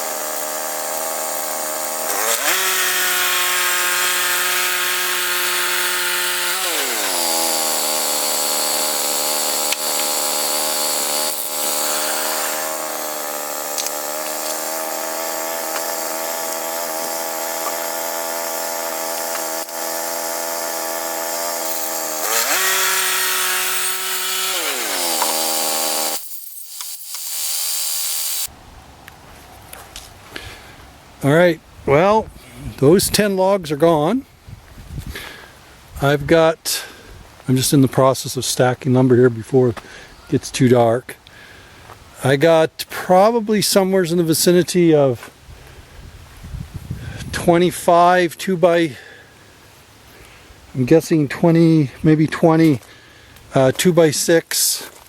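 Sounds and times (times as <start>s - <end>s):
band saw cutting log: 0.0s - 28.5s
sawmill engine running: 0.0s - 28.5s.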